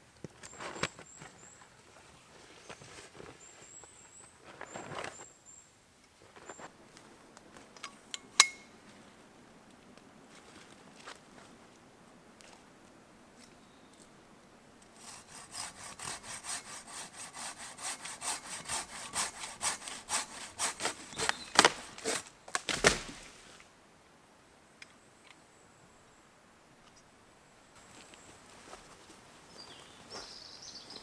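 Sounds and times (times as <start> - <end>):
hand saw cutting wood: 15.0 - 23.1
wood cracking: 18.2 - 23.4.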